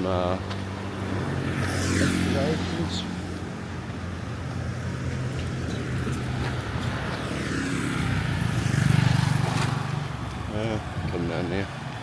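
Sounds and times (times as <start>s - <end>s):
traffic noise: 0.0s - 12.0s
vehicle engine passing by: 0.9s - 3.5s, 4.7s - 10.2s.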